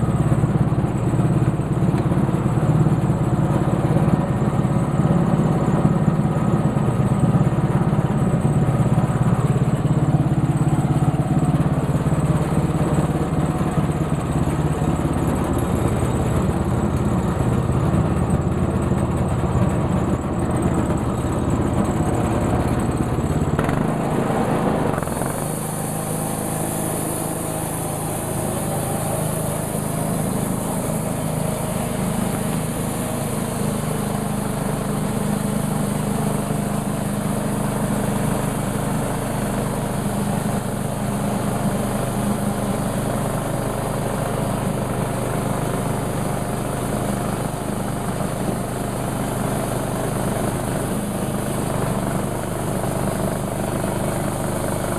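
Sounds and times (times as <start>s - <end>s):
sawmill engine running: 0.0s - 54.9s
saw cutting log: 23.6s - 36.1s.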